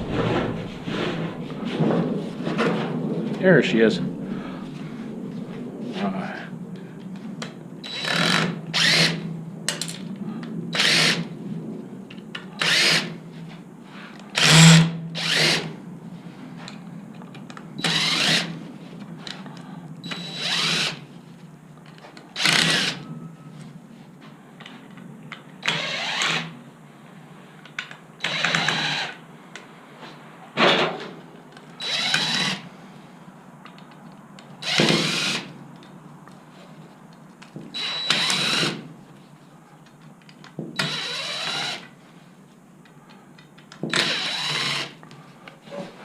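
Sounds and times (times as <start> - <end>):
power drill running: 7.9 - 9.2, 14.4 - 15.7, 17.8 - 18.6, 20.0 - 21.0, 22.4 - 23.0, 28.2 - 29.2, 31.8 - 32.6, 34.6 - 35.5, 37.8 - 38.8, 40.8 - 41.9, 43.9 - 45.0.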